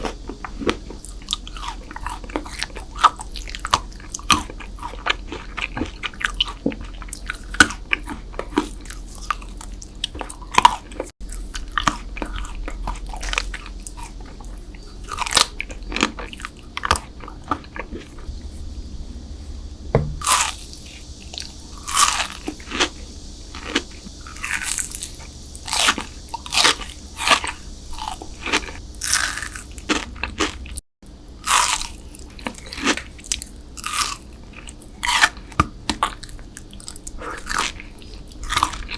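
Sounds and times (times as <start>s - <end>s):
crunchy sweets being eaten: 0.0s - 18.4s, 20.2s - 38.9s.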